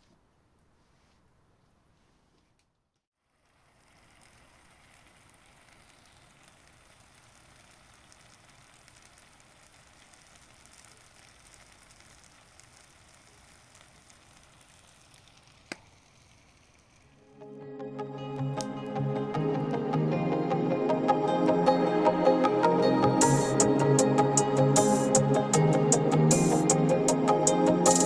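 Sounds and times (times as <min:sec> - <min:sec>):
food sizzling in a pan: 0:03.3 - 0:17.2.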